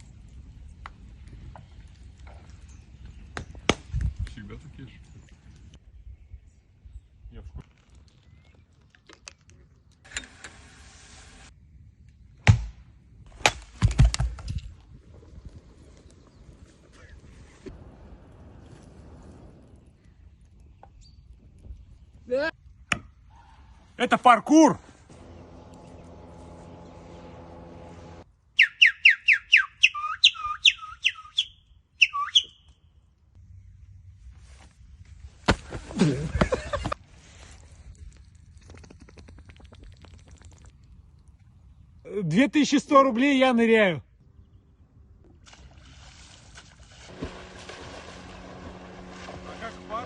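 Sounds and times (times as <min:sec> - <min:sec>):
hiss: 0:10.2 - 0:11.5
low steady hum: 0:25.0 - 0:28.2, 0:47.0 - 0:50.0
bird whistling downward notes: 0:28.6 - 0:32.8.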